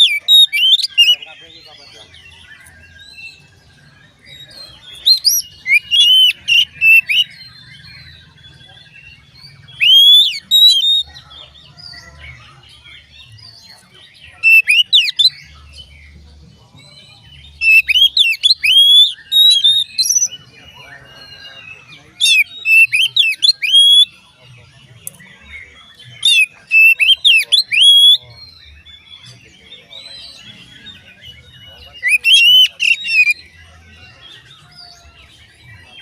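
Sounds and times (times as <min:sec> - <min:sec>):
bird singing whistled phrases: 0:00.0 - 0:01.2, 0:04.5 - 0:08.7, 0:09.8 - 0:11.2, 0:14.4 - 0:15.6, 0:17.6 - 0:24.2, 0:26.0 - 0:33.7
faint bird chattering: 0:00.0 - 0:36.0.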